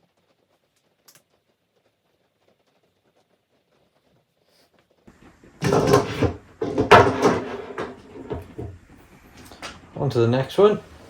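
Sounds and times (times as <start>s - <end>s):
golf clubs clattering: 5.6s - 8.7s.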